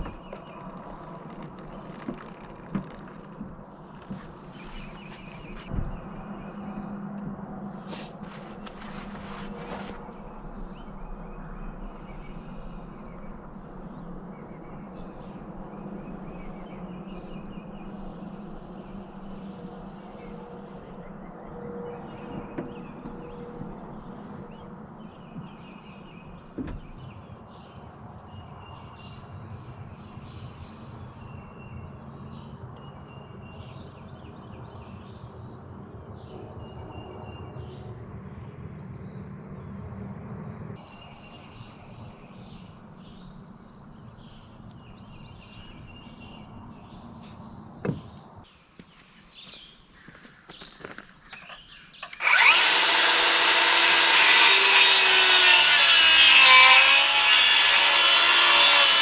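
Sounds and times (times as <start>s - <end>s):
faint knocks: 0.0s - 6.0s, 25.2s - 27.1s.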